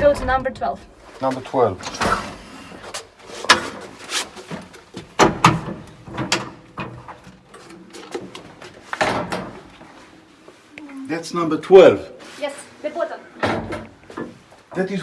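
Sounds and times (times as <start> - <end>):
lift metallic knocks and clanks: 0.0 - 10.2, 13.4 - 15.0.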